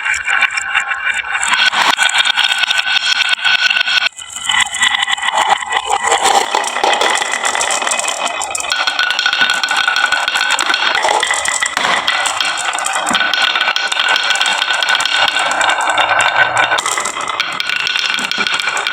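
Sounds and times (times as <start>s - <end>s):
marbles rattling down wooden run: 1.5s - 18.9s.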